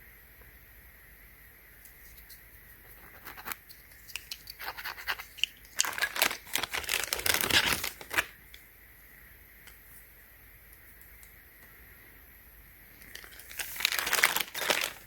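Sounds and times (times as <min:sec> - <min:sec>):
plastic packaging crinkling: 0:03.2 - 0:08.5, 0:13.0 - 0:15.0.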